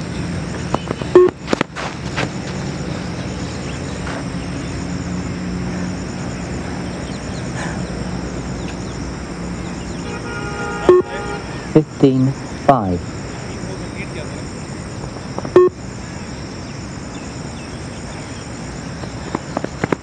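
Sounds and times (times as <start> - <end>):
outdoor background hum: 0.0 - 20.0
short beep: 1.2 - 1.4, 10.8 - 12.3, 15.6 - 15.8.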